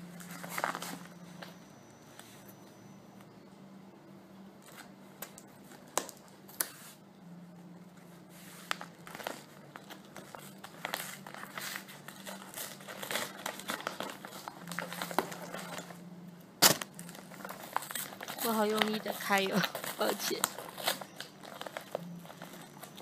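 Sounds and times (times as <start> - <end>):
packaging crinkling and tearing: 0.1 - 1.6, 8.4 - 16.0, 16.6 - 23.0
packaging snapping: 8.7 - 16.0, 16.6 - 23.0.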